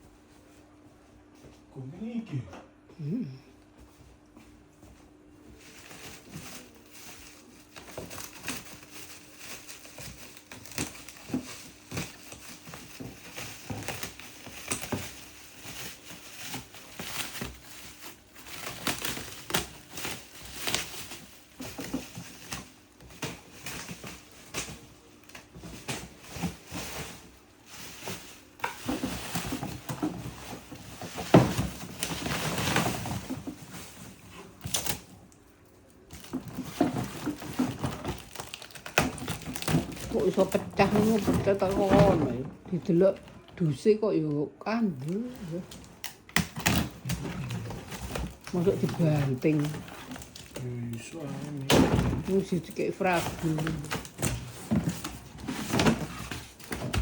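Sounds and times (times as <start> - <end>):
plastic and cardboard rustling: 4.0 - 44.1, 44.7 - 57.0
plastic bin knocking: 55.6 - 57.0.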